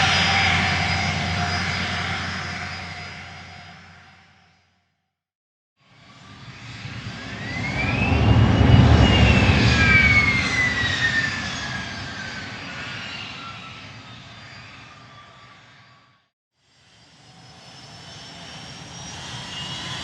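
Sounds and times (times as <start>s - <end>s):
airplane engine flying past: 0.0s - 4.7s, 5.9s - 16.1s, 16.8s - 20.0s
whine rising and falling in pitch: 6.8s - 11.6s.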